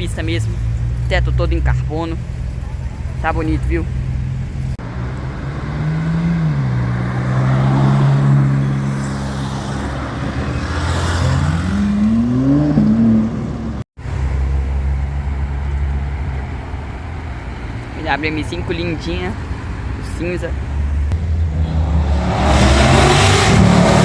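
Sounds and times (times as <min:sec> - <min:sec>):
deep engine rumble: 0:00.0 - 0:10.6, 0:19.1 - 0:24.0
car engine revving: 0:00.0 - 0:14.8, 0:20.7 - 0:24.0.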